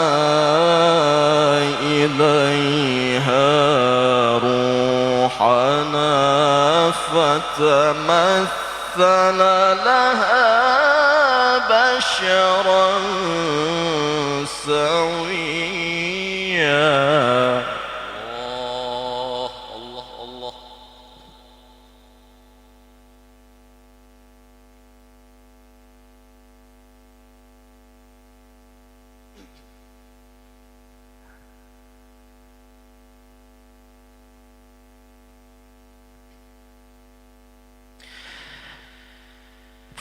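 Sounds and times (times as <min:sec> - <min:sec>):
electrical mains hum: 0:00.0 - 0:40.0.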